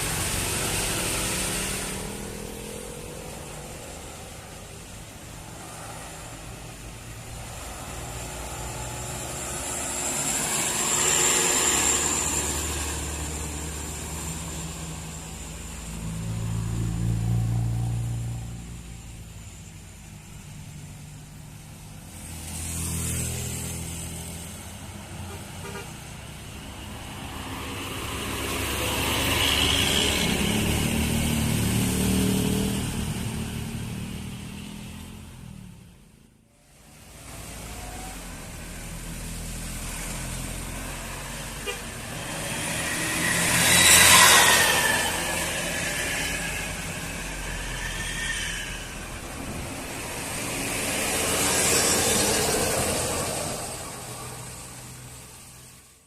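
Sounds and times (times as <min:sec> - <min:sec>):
vehicles passing uphill: 0:00.0 - 0:56.0.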